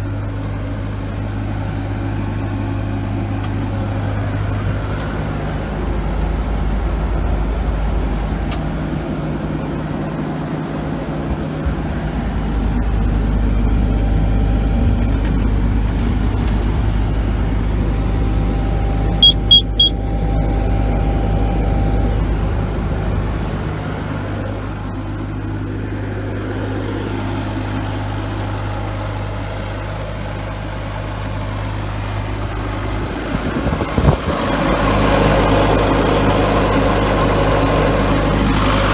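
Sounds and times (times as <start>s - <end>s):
diesel engine running: 0.0s - 38.9s
quick high beeps: 19.2s - 20.0s.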